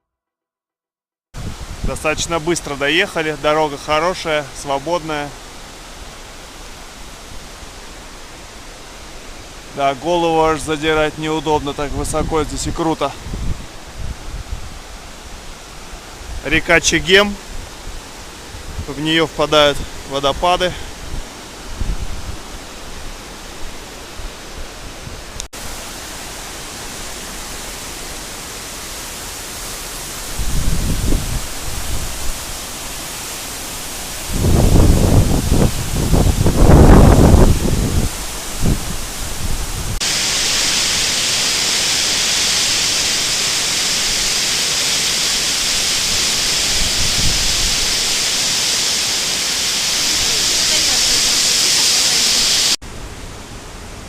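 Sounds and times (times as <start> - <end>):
wind buffeting microphone: 1.4 - 2.0, 11.9 - 15.1, 20.9 - 22.6, 30.3 - 32.6, 34.2 - 40.1, 45.7 - 48.4
river water rushing: 1.4 - 54.0.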